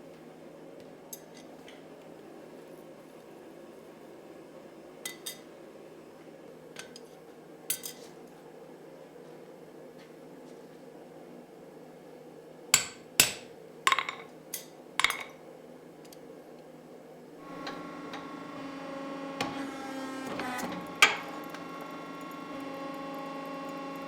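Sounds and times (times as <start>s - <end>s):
machine hum: 17.4s - 24.0s.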